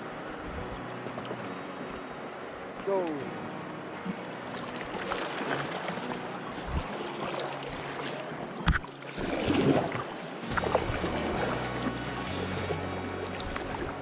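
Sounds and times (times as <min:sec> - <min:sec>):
river water rushing and splashing: 0:00.0 - 0:14.0.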